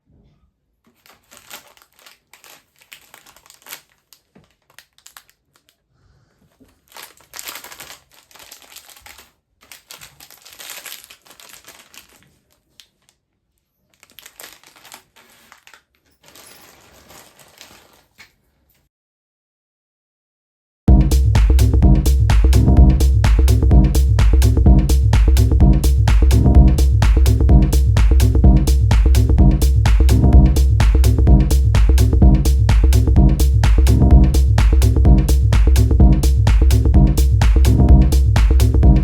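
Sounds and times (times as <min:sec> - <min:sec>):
candy wrappers crinkling: 0:00.9 - 0:05.8, 0:06.5 - 0:13.2, 0:13.8 - 0:18.3.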